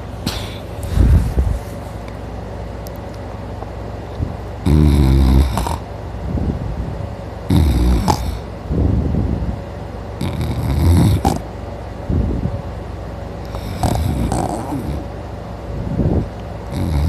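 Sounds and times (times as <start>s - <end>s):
man snoring loudly: 4.6s - 5.8s, 7.5s - 8.5s, 10.2s - 11.4s, 13.5s - 15.1s, 16.7s - 17.0s.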